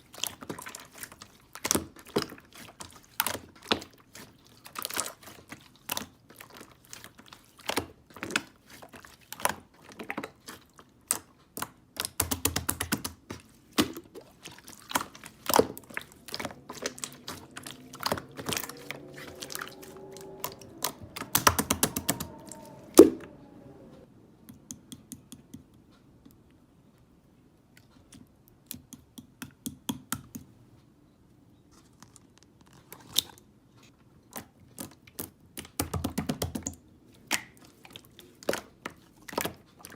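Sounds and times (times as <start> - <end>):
pitched sound gliding up and down: 15.4 - 24.1
sharp clicks and taps: 24.4 - 26.4.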